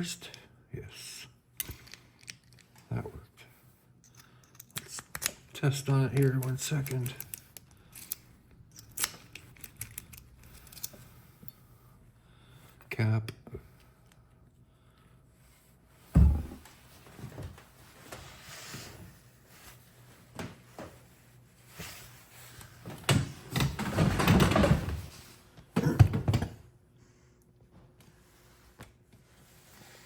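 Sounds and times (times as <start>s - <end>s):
metal parts clicking: 6.4s - 11.0s.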